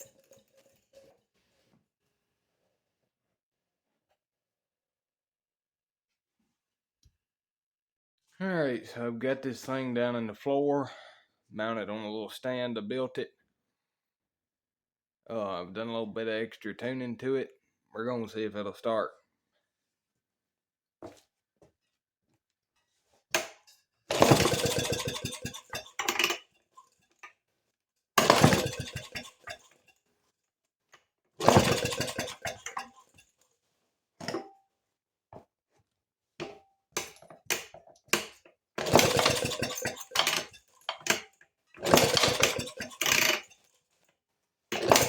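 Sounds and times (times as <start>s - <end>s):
small engine popping bursts: 31.4s - 33.0s.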